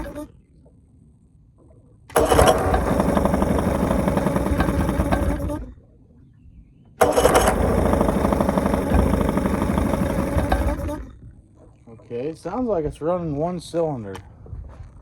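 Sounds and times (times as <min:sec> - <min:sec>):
outboard motor running roughly: 0:00.0 - 0:00.3, 0:02.1 - 0:05.8, 0:07.0 - 0:11.2.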